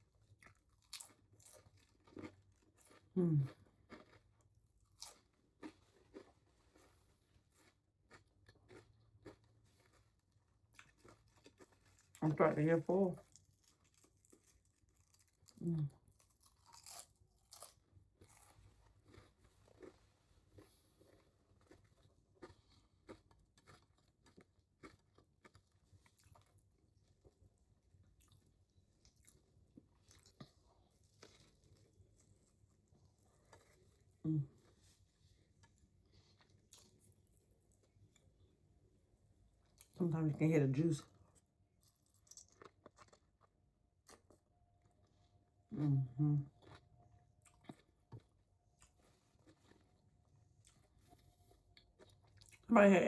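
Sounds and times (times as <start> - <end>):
close-miked chewing: 0.0 - 38.7, 40.9 - 45.5, 46.4 - 52.7
person chewing with mouth clicks: 45.8 - 50.0.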